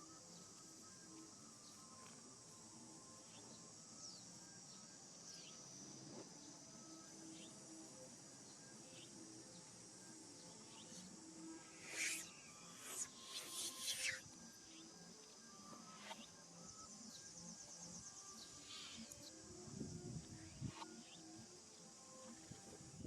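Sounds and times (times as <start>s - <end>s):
insects chirping chorus: 0.0s - 23.0s.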